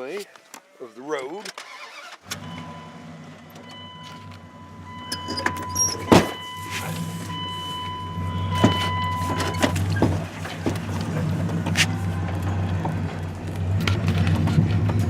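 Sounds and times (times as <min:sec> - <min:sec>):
truck engine idling: 0:02.2 - 0:15.0
electronic warning tone: 0:03.6 - 0:09.8.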